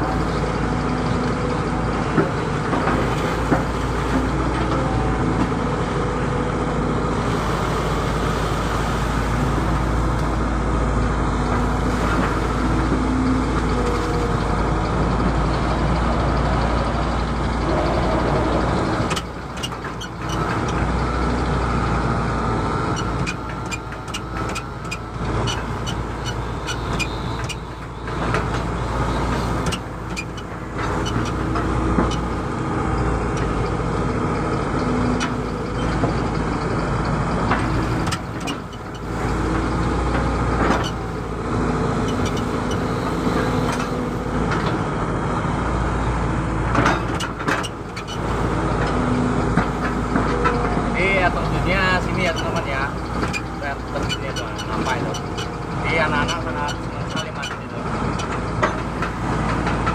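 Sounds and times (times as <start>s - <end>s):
excavator diesel engine running: 0.0s - 59.9s
sharp clicks and knocks: 19.0s - 20.9s, 23.0s - 32.3s, 37.4s - 41.0s, 46.7s - 51.0s, 52.0s - 59.9s.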